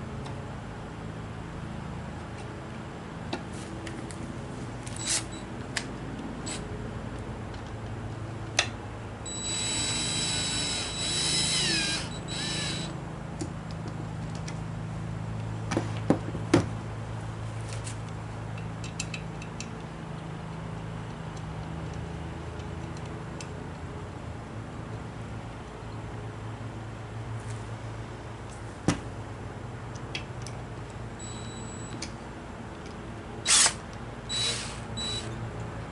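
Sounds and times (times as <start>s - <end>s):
electric power tool whirring: 9.3s - 13.0s, 33.5s - 35.3s.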